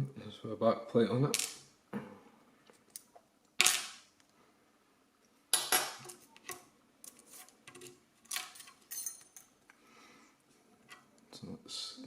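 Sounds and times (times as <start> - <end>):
metal lock parts clinking: 7.8 - 9.6.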